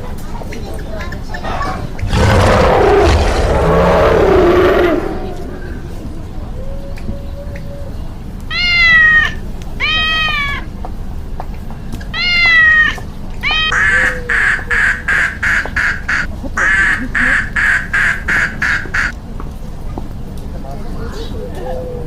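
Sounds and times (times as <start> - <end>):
cat meowing: 8.5 - 10.7, 12.1 - 13.8
duck quacking rapidly: 13.7 - 19.1.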